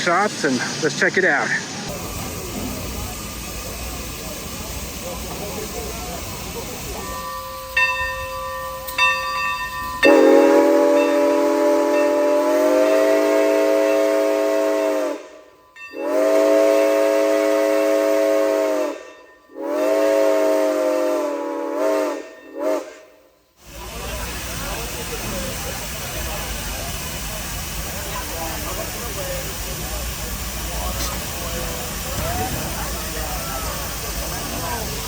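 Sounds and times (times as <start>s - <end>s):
steady steam hiss: 0.0s - 35.0s
locomotive bell ringing: 6.0s - 12.4s, 15.5s - 16.3s, 19.0s - 19.9s, 22.2s - 22.8s
steam locomotive chime whistle: 6.3s - 23.4s.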